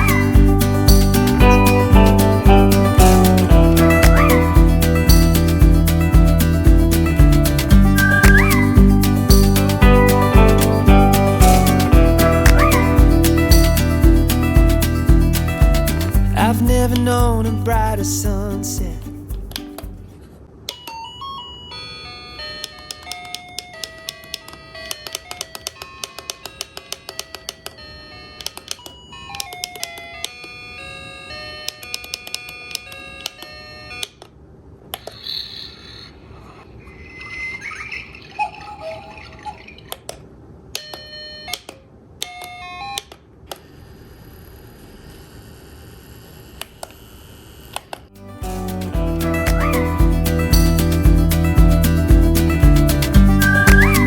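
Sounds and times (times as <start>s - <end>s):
stepped electronic beeping tones: 7.8s - 8.6s.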